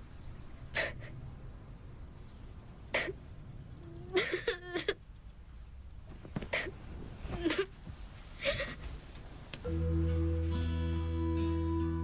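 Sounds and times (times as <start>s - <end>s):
child sniffling: 0.8s - 1.2s.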